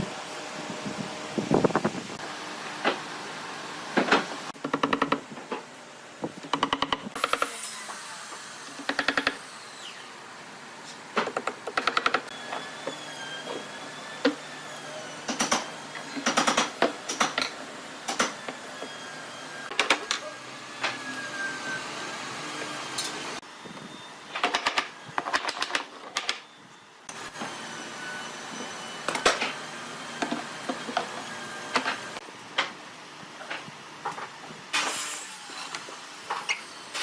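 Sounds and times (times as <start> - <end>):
clicking taps and knocks: 4.6 - 5.3, 6.4 - 7.1.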